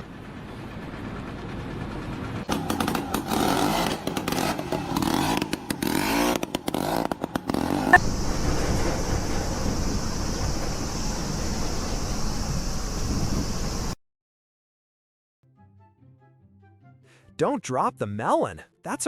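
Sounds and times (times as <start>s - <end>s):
engine knocks and clatter: 0.0s - 12.2s
engine revving unevenly: 2.4s - 8.8s.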